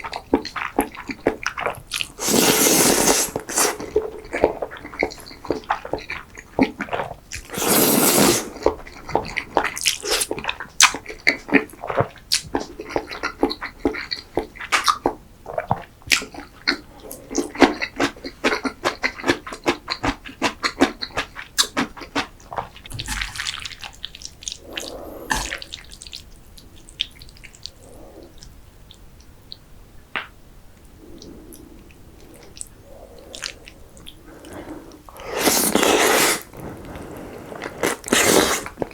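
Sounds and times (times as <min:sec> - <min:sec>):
wet chewing: 0:00.0 - 0:29.6, 0:31.0 - 0:38.9
loud slurp: 0:02.0 - 0:04.0, 0:07.4 - 0:08.6, 0:24.4 - 0:26.1, 0:31.1 - 0:38.9
sticky mouth clicks: 0:24.1 - 0:26.2.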